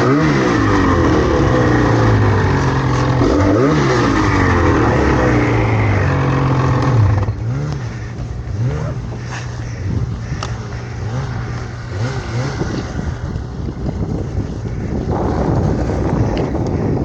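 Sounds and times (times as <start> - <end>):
snowmobile engine revving: 0.0 - 17.0.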